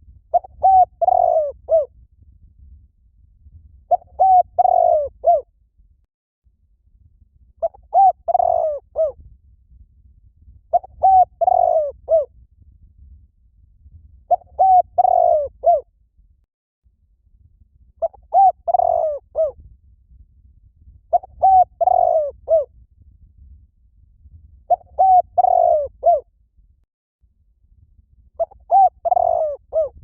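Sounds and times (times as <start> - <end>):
dove cooing: 0.3 - 1.9, 3.9 - 5.4, 7.6 - 9.2, 10.7 - 12.3, 14.3 - 15.8, 18.0 - 19.6, 21.1 - 22.7, 24.7 - 26.2, 28.4 - 30.0.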